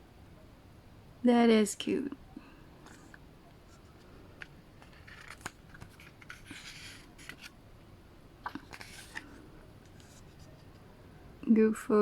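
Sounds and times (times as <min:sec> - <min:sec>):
paper rustling: 0:04.8 - 0:07.6, 0:08.4 - 0:10.8.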